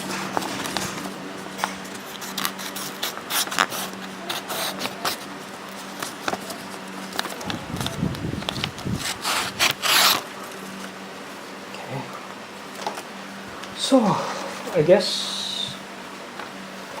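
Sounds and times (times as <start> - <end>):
multi tool clicking and scraping: 0.0 - 10.9
steady low hum: 0.0 - 17.0.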